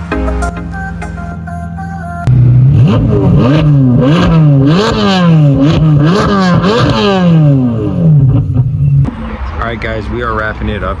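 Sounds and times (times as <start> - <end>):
car engine revving: 2.2 - 9.6.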